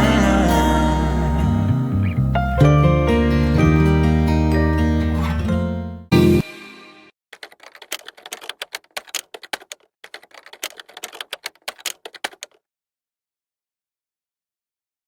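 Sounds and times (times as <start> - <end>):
music: 0.0 - 7.1
keyboard typing clicks: 7.4 - 12.6.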